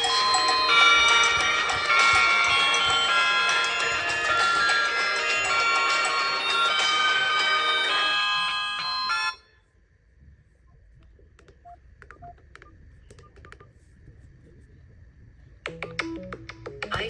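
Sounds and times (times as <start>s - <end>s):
bell-like phone ringtone: 0.0s - 9.5s.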